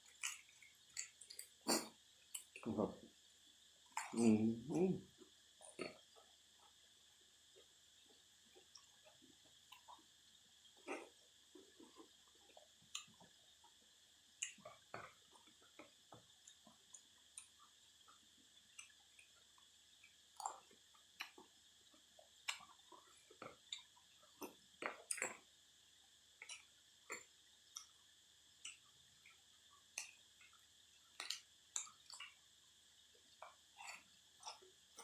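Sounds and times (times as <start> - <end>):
chewing and slurping noodle soup: 10.8 - 25.5, 30.0 - 32.4, 33.4 - 35.0.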